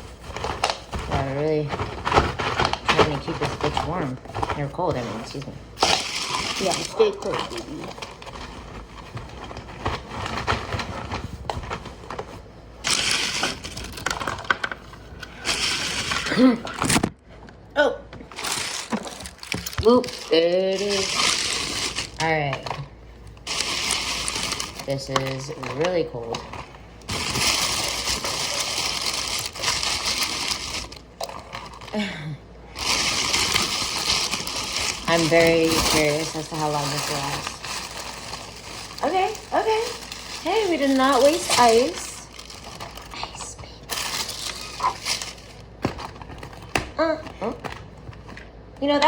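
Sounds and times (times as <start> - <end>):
ice cubes clinking and crunching: 5.2 - 8.5, 12.8 - 14.7, 15.3 - 17.0, 18.3 - 32.0, 32.7 - 45.8.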